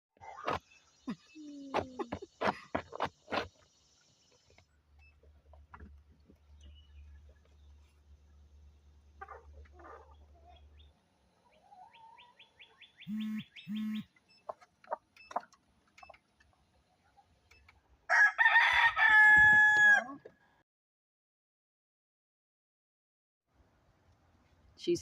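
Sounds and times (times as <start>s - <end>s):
chickens clucking softly: 9.0s - 17.5s
loud drawn-out chicken call: 18.1s - 20.2s.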